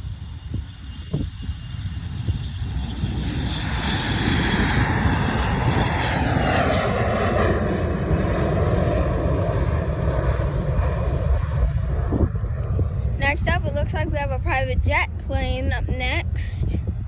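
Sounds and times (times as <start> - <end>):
jet aircraft taking off: 0.0 - 17.0.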